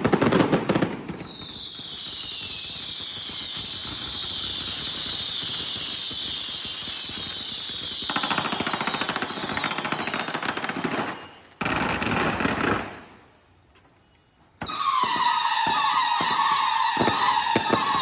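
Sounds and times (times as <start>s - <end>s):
whistling firework shrieking: 1.1s - 11.6s, 14.6s - 18.0s
firecracker bangs: 14.6s - 18.0s.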